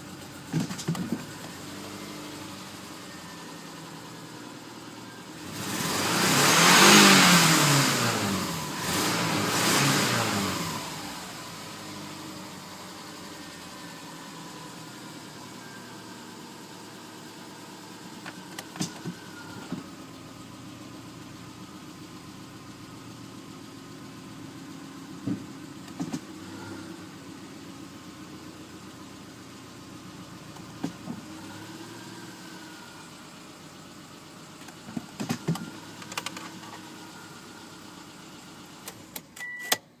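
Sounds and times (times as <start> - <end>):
car engine idling roughly: 0.0 - 5.3.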